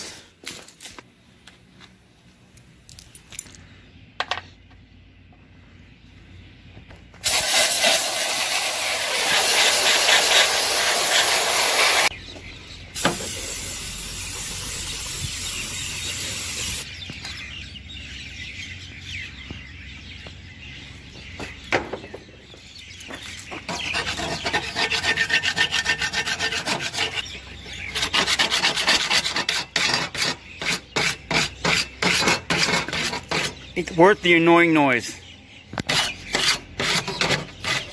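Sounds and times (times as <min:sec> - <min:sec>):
metal scraping and rasping: 0:23.3 - 0:34.0, 0:35.8 - 0:37.9.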